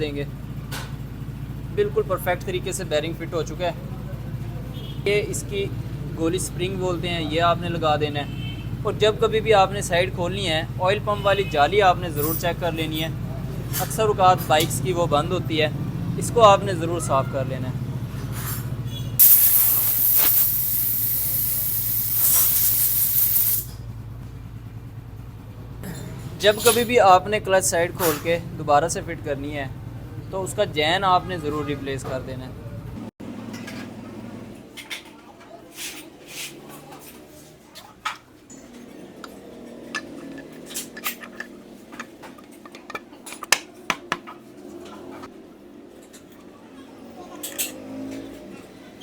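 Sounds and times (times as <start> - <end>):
pressurised spray hissing: 19.2 - 23.8
metal tools clinking: 26.5 - 27.0, 38.5 - 43.6.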